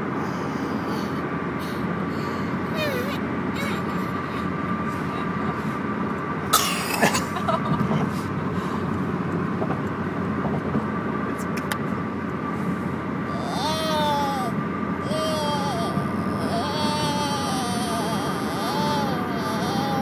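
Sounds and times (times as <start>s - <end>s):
steady background hum: 0.0s - 20.0s
infant gasping: 0.2s - 5.4s, 13.3s - 20.0s.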